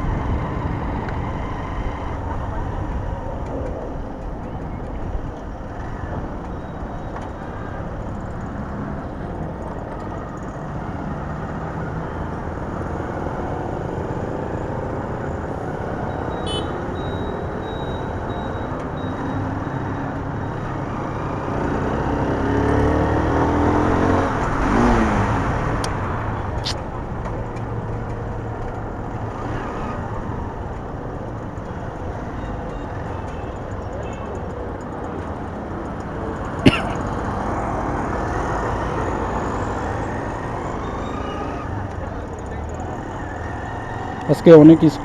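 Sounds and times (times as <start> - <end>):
motorcycle engine: 0.0 - 45.0
road and wind noise: 0.0 - 45.0.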